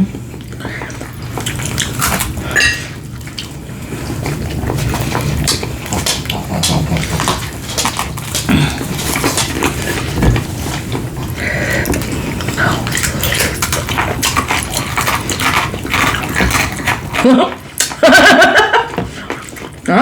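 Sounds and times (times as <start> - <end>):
cutlery and dishes clinking: 2.5 - 3.0.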